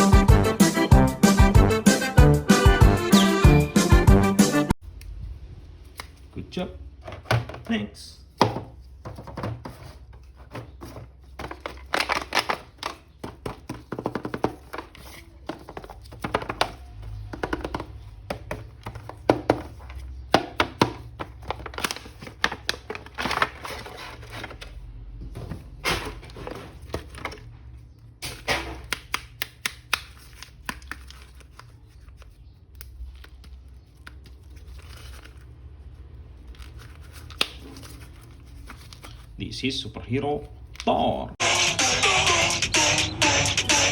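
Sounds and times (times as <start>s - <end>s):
packaging crinkling: 10.2s - 17.3s, 21.0s - 24.8s, 29.8s - 39.4s
packaging tearing: 11.4s - 12.9s, 21.3s - 24.8s.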